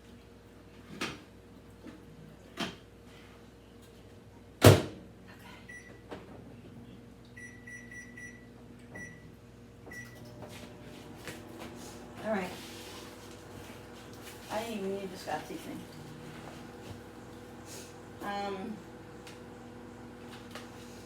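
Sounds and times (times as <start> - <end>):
microwave oven humming: 0.0 - 21.0
keypad beeps: 7.4 - 8.4, 9.0 - 9.2.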